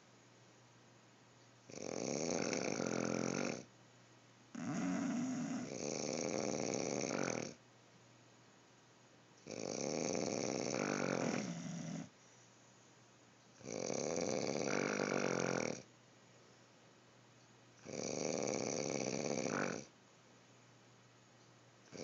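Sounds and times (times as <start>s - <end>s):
person snoring: 1.7s - 3.7s, 4.6s - 7.6s, 9.5s - 12.1s, 13.6s - 15.8s, 17.8s - 19.9s.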